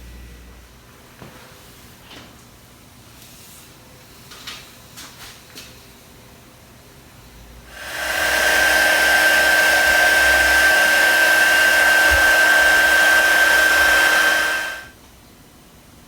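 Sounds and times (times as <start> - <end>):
heat gun blowing with high whine: 7.7 - 14.9.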